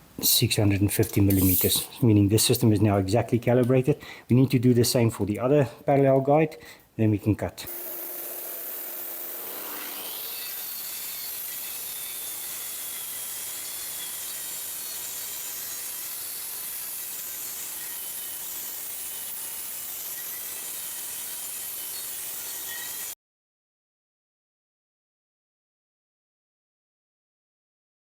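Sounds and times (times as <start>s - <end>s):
track saw cutting panel: 7.7s - 23.2s.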